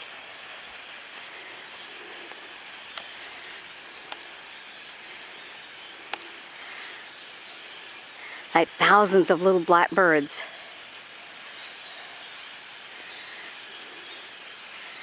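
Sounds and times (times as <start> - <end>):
huge flock of birds chattering: 0.0 - 15.0
sharp ticks: 6.1 - 6.3.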